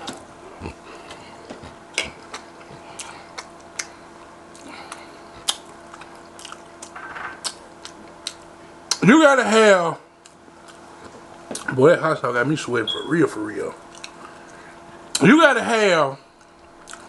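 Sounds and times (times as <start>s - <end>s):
man chewing food: 0.0s - 9.0s, 10.2s - 11.7s, 13.8s - 15.2s, 16.3s - 17.0s
faint steady hum: 0.0s - 17.0s
mouth clicks and smacks: 1.9s - 9.0s, 13.9s - 14.3s.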